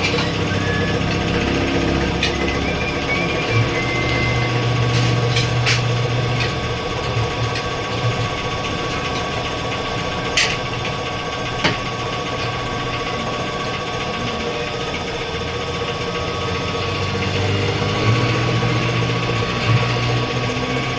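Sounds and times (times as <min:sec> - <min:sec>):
sharp clicks and knocks: 0:00.0 - 0:09.5
low hum: 0:00.0 - 0:20.6
small machine motor running: 0:00.0 - 0:20.9.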